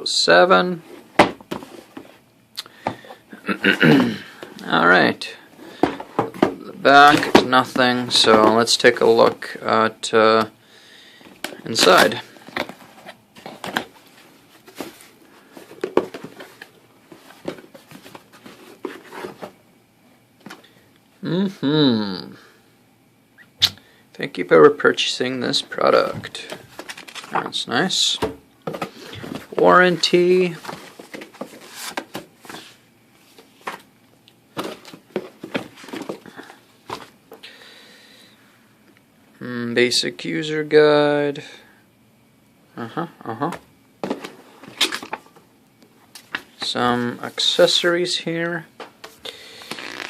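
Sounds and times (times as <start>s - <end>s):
papers and packaging rustling: 5.7s - 9.6s, 11.3s - 19.6s, 25.9s - 27.6s, 28.7s - 33.9s, 34.5s - 37.2s, 44.0s - 45.4s
cardboard box packaging handled: 26.2s - 27.4s.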